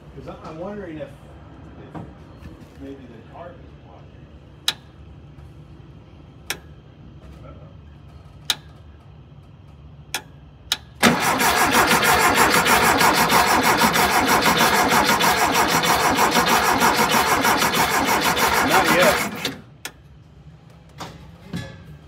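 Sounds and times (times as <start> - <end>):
engine cranking on starter: 11.0 - 19.7.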